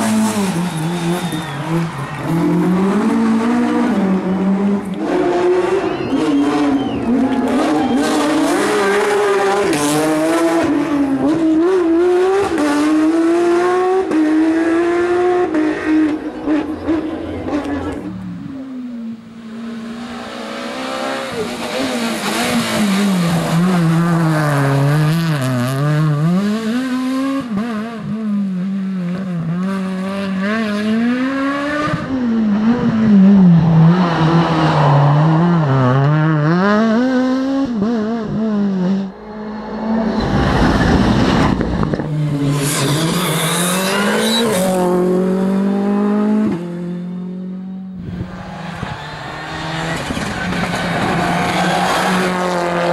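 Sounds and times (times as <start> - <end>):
rally car engines at full throttle: 0.0 - 52.9
loud rush of noise: 39.5 - 45.3.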